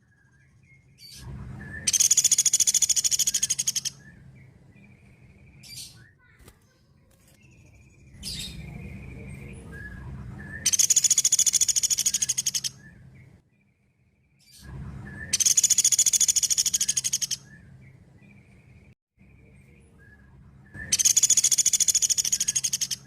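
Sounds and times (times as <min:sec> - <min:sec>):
low background hum: 0:00.0 - 0:23.0
woodpecker rattling trills: 0:01.8 - 0:04.1, 0:10.6 - 0:12.8, 0:15.4 - 0:17.5, 0:20.9 - 0:23.0.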